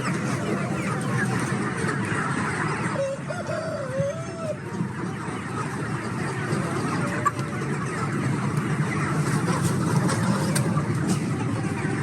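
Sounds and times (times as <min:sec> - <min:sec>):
faint chicken sounds: 0:00.0 - 0:12.0
rooster crowing: 0:03.0 - 0:04.6.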